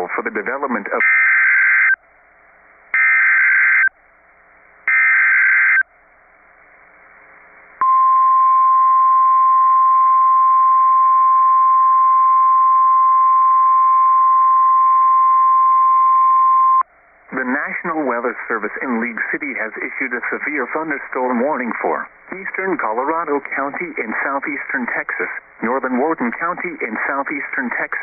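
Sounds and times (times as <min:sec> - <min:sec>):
faint radio hiss: 0:00.0 - 0:01.0, 0:17.0 - 0:28.0.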